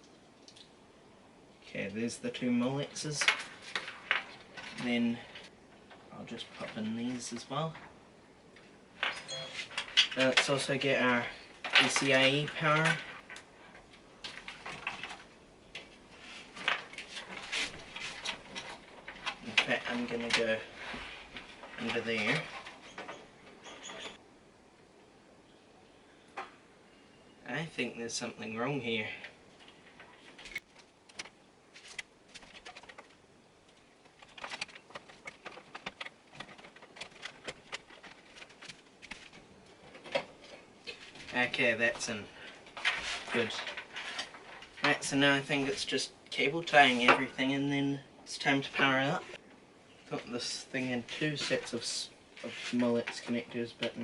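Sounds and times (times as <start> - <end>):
cables rustling: 1.5 - 24.2, 27.8 - 54.0
cable connector clicks and rattles: 33.7 - 39.3.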